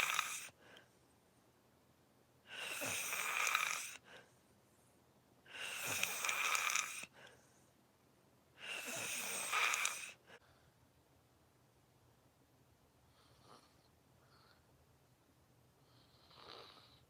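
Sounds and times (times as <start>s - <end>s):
person snoring: 0.0s - 0.6s, 2.5s - 4.0s, 5.5s - 7.1s, 8.6s - 10.2s
quiet breathing: 0.0s - 1.2s, 2.4s - 7.9s, 8.5s - 11.0s, 13.0s - 14.9s, 15.7s - 17.0s.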